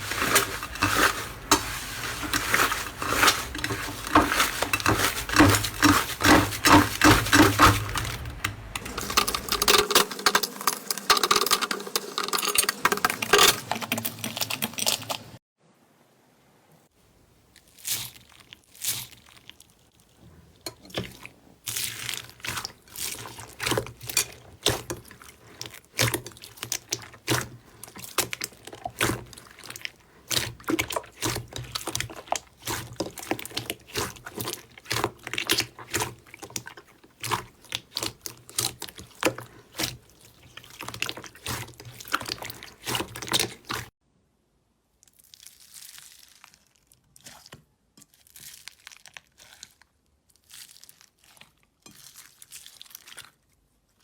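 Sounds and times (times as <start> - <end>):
slime squishing by hand: 0.0 - 10.0, 17.6 - 43.9, 45.2 - 49.8.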